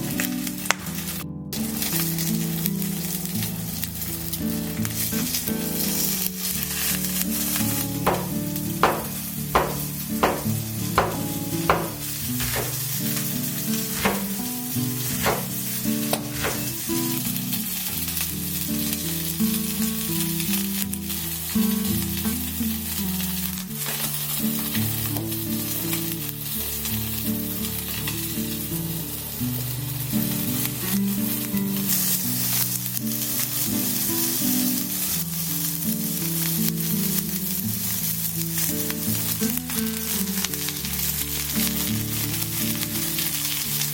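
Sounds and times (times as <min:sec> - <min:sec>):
food sizzling in a pan: 0:00.0 - 0:43.9
sharp taps: 0:08.1 - 0:12.9, 0:14.0 - 0:14.4, 0:15.2 - 0:15.6.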